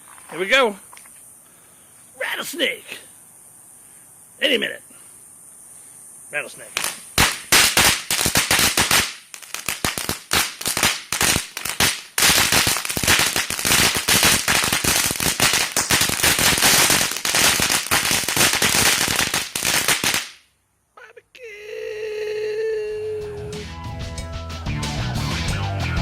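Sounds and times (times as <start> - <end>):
firework crackling: 6.6 - 20.5.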